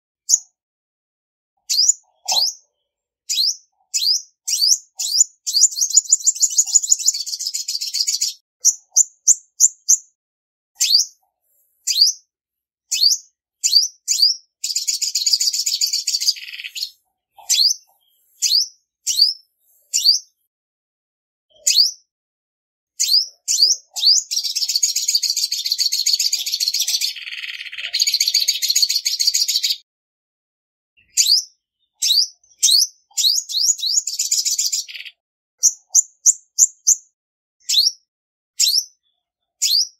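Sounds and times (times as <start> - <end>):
bird fast twittering trills: 1.7 - 2.6, 3.3 - 10.0, 10.8 - 11.2, 11.8 - 12.2, 12.9 - 20.3.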